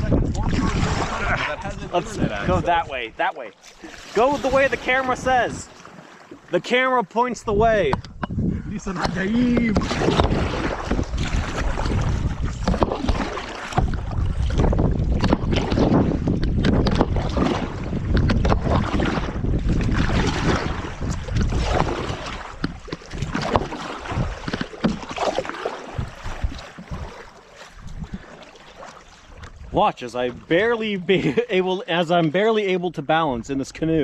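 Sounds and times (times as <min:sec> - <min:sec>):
wind rumbling on microphone: 0:00.0 - 0:03.2, 0:07.3 - 0:28.4
kayak paddling through water: 0:00.0 - 0:32.8.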